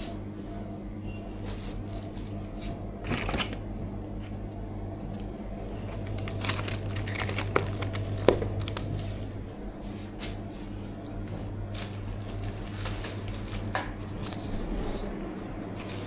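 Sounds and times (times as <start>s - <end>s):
low electrical hum: 0.0s - 16.0s
plastic packaging rustling: 1.5s - 3.6s, 5.9s - 9.4s, 11.7s - 16.0s.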